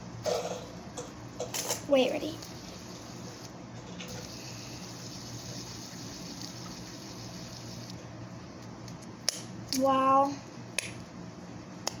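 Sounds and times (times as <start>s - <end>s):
steady background hiss: 0.0s - 8.8s.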